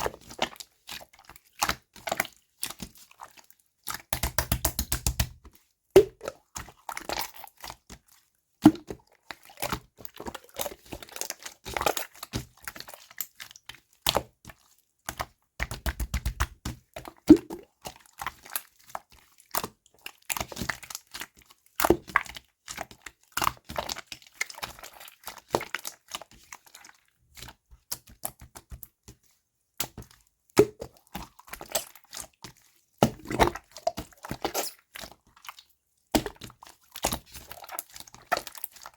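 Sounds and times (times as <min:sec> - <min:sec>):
slime squeezed by hand: 0:33.0 - 0:35.0.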